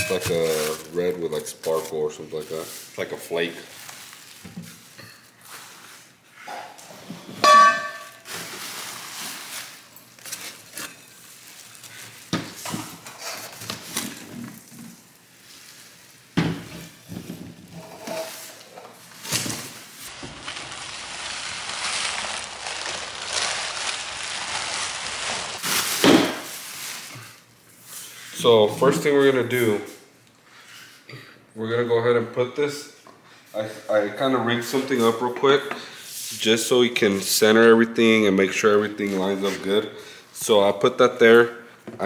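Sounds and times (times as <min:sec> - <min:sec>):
metal clang ringing: 0:07.4 - 0:08.2.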